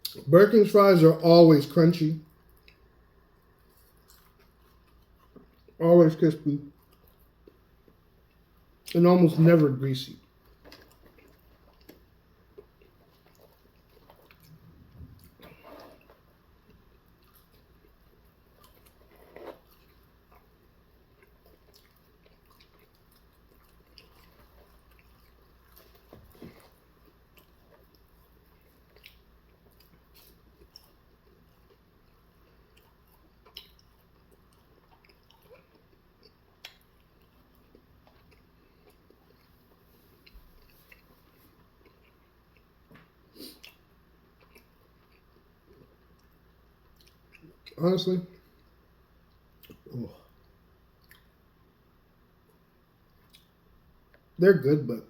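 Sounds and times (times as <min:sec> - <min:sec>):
chewing and mouth sounds: 0:02.2 - 0:05.8, 0:06.6 - 0:09.0, 0:10.2 - 0:51.4, 0:52.4 - 0:54.4
soft mouth clicks and smacks: 0:32.7 - 0:39.5, 0:44.4 - 0:47.8, 0:49.3 - 0:50.0, 0:51.0 - 0:51.3, 0:52.5 - 0:54.3.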